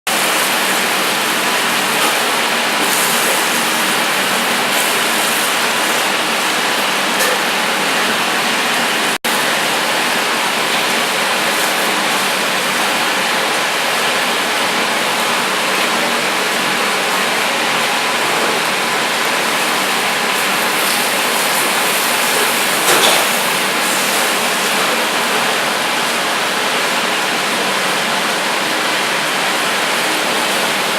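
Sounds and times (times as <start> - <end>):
steaks sizzling on a grill: 0.1 - 8.0, 20.3 - 25.4.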